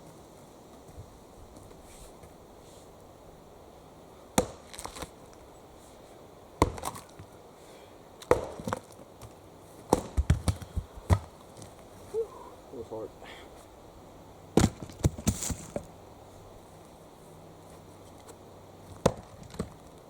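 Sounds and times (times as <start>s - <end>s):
axe chopping log: 4.4s - 5.0s, 6.6s - 7.2s, 8.2s - 9.0s, 9.9s - 11.3s, 14.6s - 15.8s, 19.0s - 19.8s.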